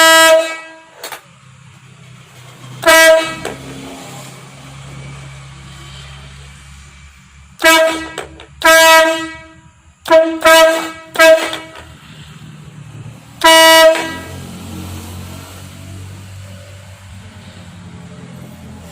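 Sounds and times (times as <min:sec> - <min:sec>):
air horn blasts: 0:00.0 - 0:01.0, 0:02.8 - 0:03.6, 0:07.6 - 0:12.3, 0:13.4 - 0:14.5.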